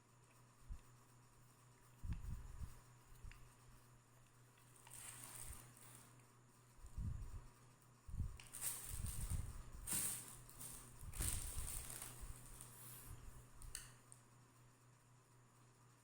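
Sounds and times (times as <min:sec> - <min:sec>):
faint rustling: 0:04.7 - 0:06.1, 0:08.4 - 0:13.3.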